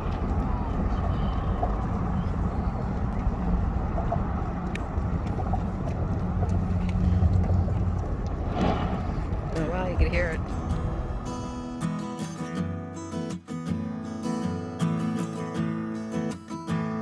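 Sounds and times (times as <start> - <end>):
low engine drone: 0.0 - 12.2.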